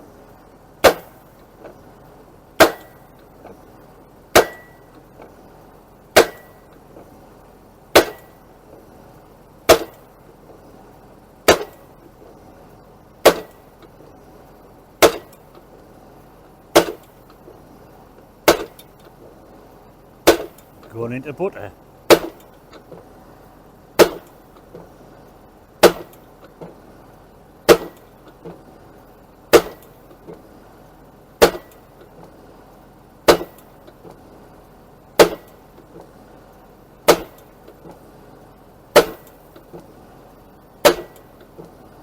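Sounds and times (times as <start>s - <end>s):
tractor engine hum: 20.8s - 21.7s.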